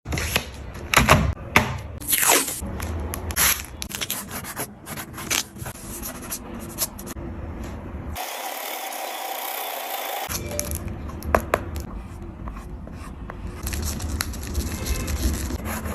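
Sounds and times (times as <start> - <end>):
oil pastel scraping paper: 13.0 - 15.9.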